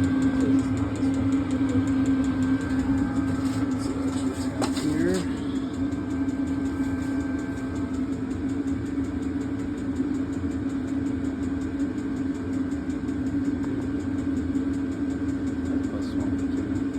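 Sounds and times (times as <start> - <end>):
air heater humming: 0.0 - 16.9.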